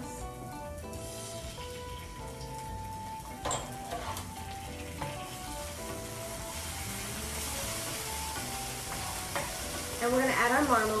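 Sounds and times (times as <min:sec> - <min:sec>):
food sizzling in hot oil: 0:00.0 - 0:11.0.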